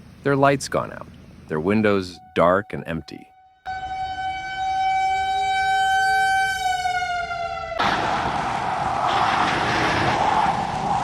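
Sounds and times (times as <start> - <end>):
siren: 1.8 - 11.0
loud steady rushing noise: 7.8 - 11.0.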